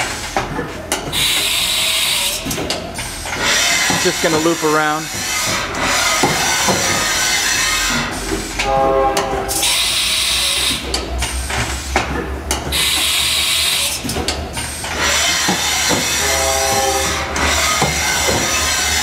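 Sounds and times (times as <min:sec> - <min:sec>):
machine knocks: 0:05.2 - 0:07.2, 0:15.4 - 0:18.6
machine whine with several pitches: 0:05.3 - 0:11.9, 0:15.0 - 0:19.0
steady low hum: 0:08.1 - 0:10.2.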